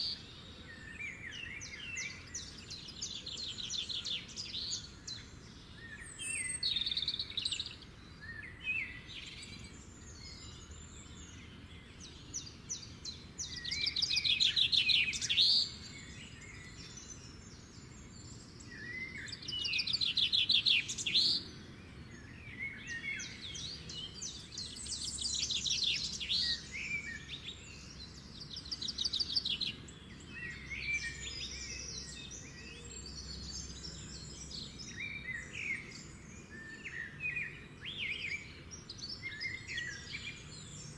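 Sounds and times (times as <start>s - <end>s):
bird chirps and calls: 0.0s - 40.9s
songbird trilling: 12.3s - 17.2s, 18.7s - 21.5s.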